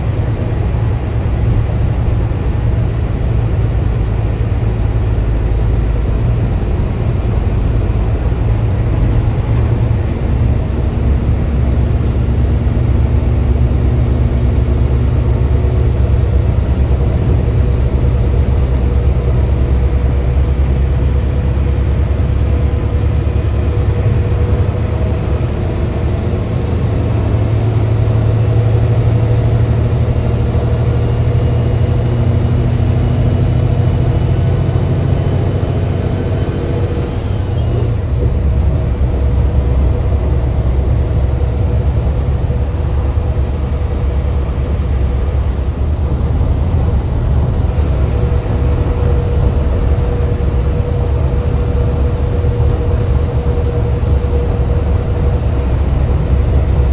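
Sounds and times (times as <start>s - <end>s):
bus engine rumbling: 0.0s - 56.9s.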